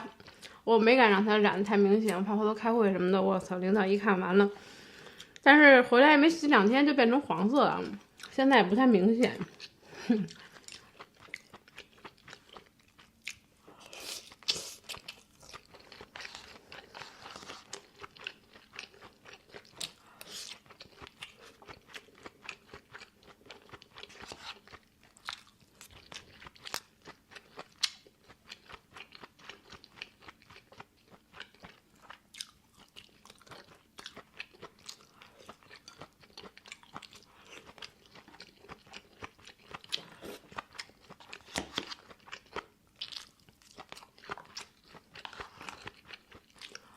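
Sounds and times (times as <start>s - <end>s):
person chewing crunchy food: 0.0s - 0.6s, 8.0s - 8.4s, 9.4s - 46.9s.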